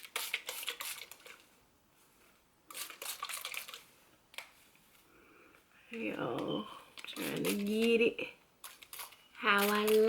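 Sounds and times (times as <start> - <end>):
spray bottle squirting: 0.0 - 1.3, 2.7 - 3.8.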